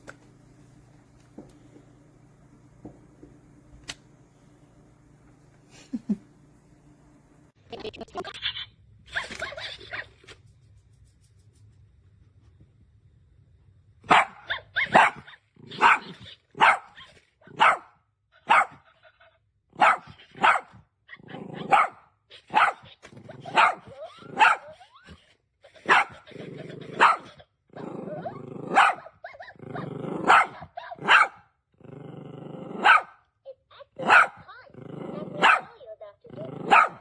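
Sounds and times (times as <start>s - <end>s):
robot dog toy barking: 14.1s - 18.9s, 19.8s - 24.9s, 25.7s - 31.4s, 32.8s - 33.1s, 33.8s - 37.0s.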